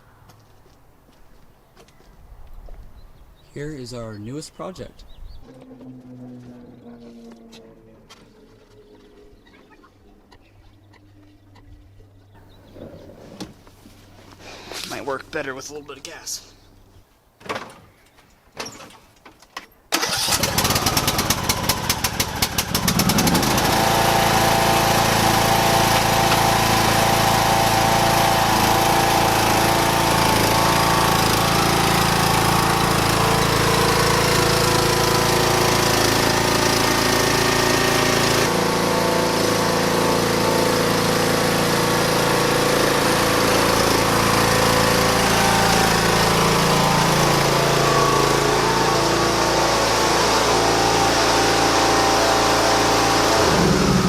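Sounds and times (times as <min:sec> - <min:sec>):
lawn mower engine starting: 0:19.9 - 0:54.0.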